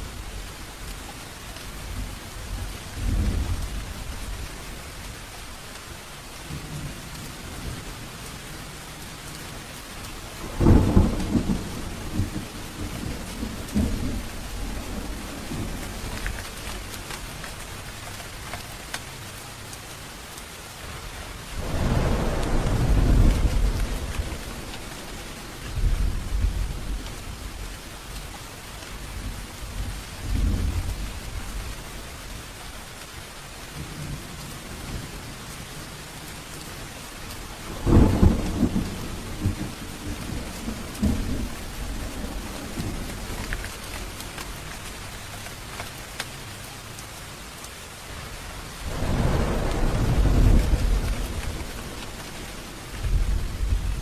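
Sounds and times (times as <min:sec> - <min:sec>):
thunder rumbling: 0:00.0 - 0:18.9, 0:20.9 - 0:32.5, 0:33.8 - 0:45.8, 0:47.9 - 0:54.0
heavy rain: 0:00.0 - 0:54.0.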